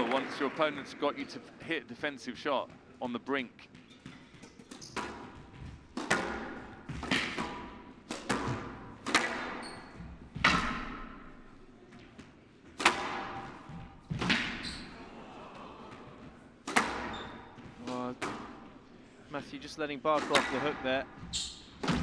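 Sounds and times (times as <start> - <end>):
squash ball smacks: 5.9 - 9.6, 10.4 - 11.3, 12.8 - 14.6, 16.6 - 17.2.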